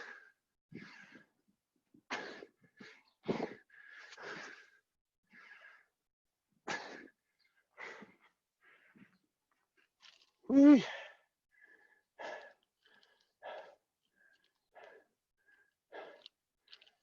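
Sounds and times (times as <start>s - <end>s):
people gasping breaths: 2.1s - 6.0s, 7.8s - 9.2s, 10.8s - 17.0s.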